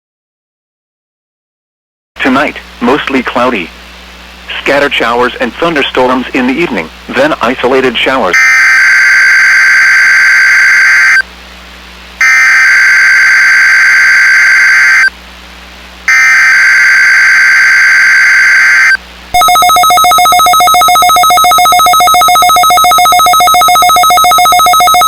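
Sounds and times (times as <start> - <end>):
screechy digital data tones: 8.4 - 11.2, 12.2 - 15.1, 16.1 - 25.0
trilling electronic alert tone: 12.2 - 15.1, 16.1 - 25.0.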